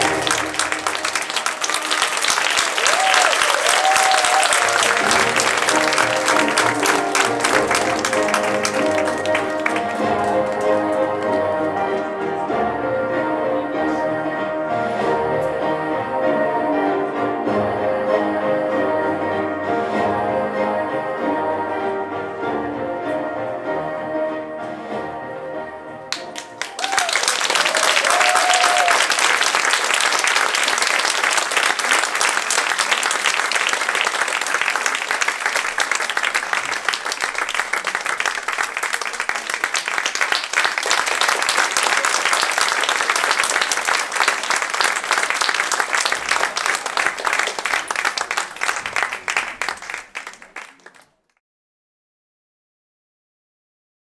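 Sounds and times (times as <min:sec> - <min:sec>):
audience applauding: 0:00.0 - 0:12.4, 0:26.1 - 0:51.3
person whooping: 0:02.6 - 0:05.2, 0:26.6 - 0:29.2.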